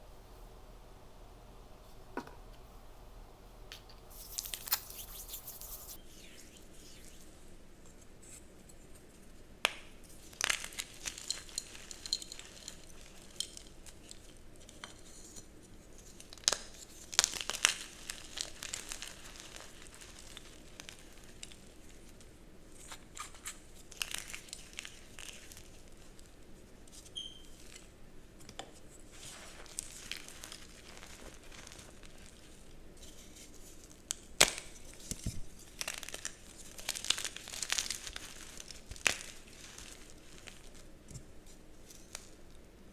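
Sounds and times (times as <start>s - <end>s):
chalk crunching by hand: 4.1s - 7.2s.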